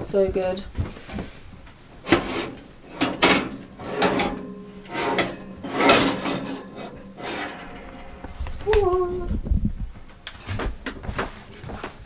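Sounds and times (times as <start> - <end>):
sliding rubs: 0.9 - 9.3.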